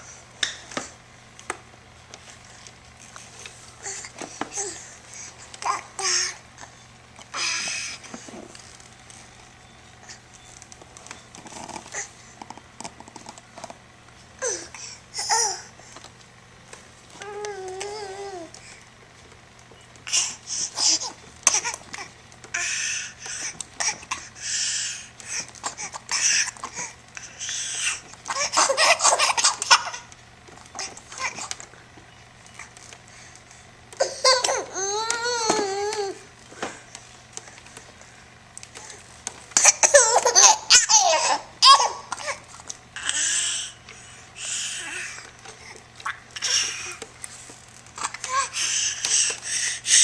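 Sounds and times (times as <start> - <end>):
baby babbling and giggling: 39.6 - 42.4.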